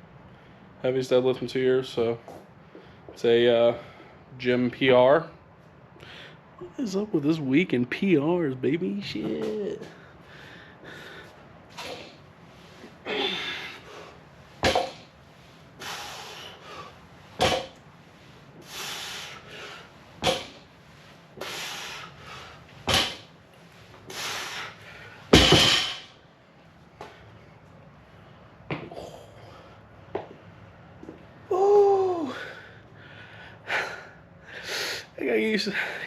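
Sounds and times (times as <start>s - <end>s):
loud breath: 9.9s - 12.2s, 12.8s - 14.2s, 15.8s - 17.0s, 18.6s - 19.9s
barbell plates knocking on floor: 25.3s - 26.0s.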